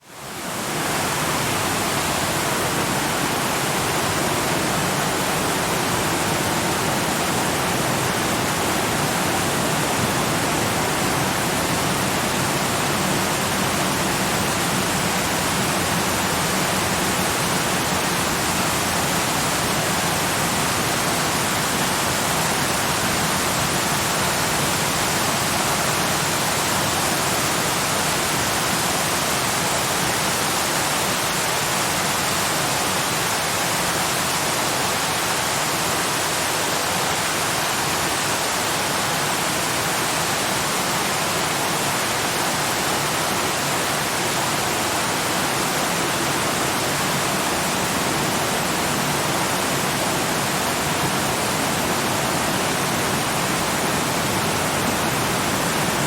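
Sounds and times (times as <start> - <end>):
waterfall roaring: 0.0 - 56.0.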